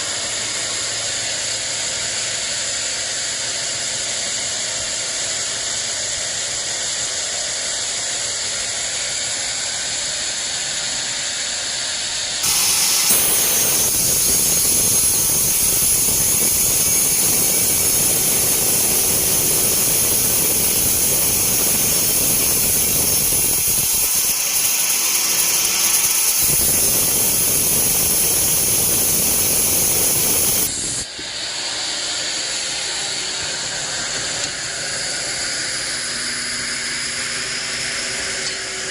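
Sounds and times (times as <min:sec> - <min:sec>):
band saw cutting log: 0:12.4 - 0:30.8.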